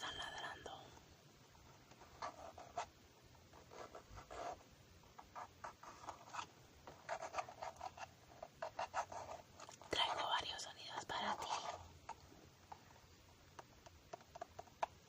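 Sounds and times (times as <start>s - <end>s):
soft rubbing and scratching: 0.0s - 13.1s.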